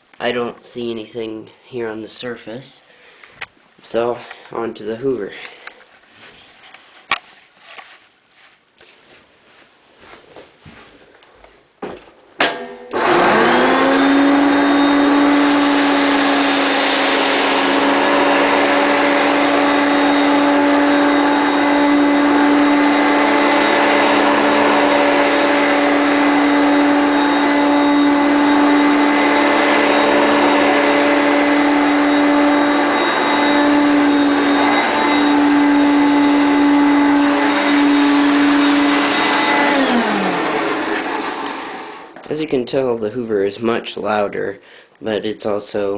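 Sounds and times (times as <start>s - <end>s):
vacuum cleaner motor whining: 12.9s - 42.3s.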